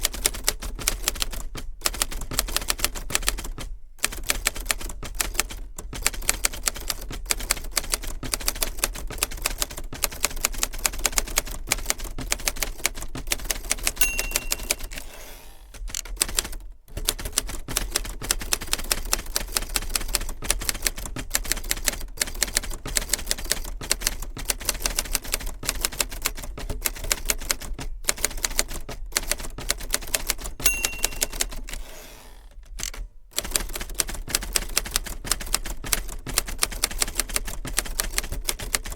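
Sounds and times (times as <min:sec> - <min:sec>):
typewriter keystrokes: 0:00.0 - 0:15.1, 0:15.8 - 0:31.9, 0:32.7 - 0:38.9
typewriter carriage return: 0:00.2 - 0:22.6, 0:25.1 - 0:38.9
typewriter bell ding: 0:14.0 - 0:15.2, 0:30.6 - 0:31.9.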